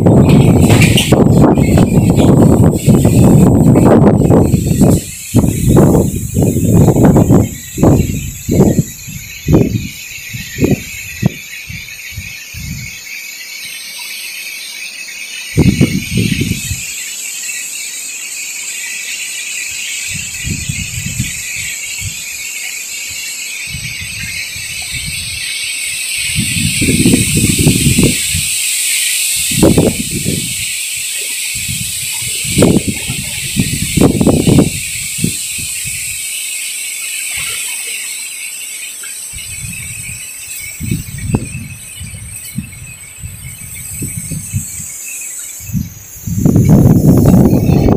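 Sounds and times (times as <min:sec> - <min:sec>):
strong gusting wind: 0:00.0 - 0:13.0, 0:15.5 - 0:17.0, 0:19.7 - 0:22.5, 0:23.1 - 0:36.4, 0:39.2 - 0:47.9
wind buffeting microphone: 0:00.0 - 0:13.0, 0:15.5 - 0:17.0, 0:19.7 - 0:36.4, 0:39.2 - 0:47.9.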